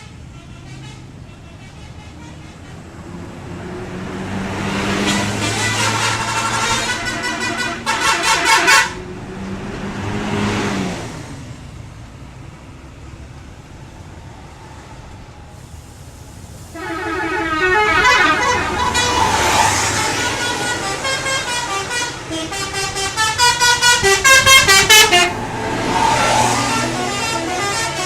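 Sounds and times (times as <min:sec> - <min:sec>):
multi-tone bus horns: 0:00.0 - 0:10.6, 0:16.6 - 0:28.0
bus engine running: 0:00.0 - 0:28.0.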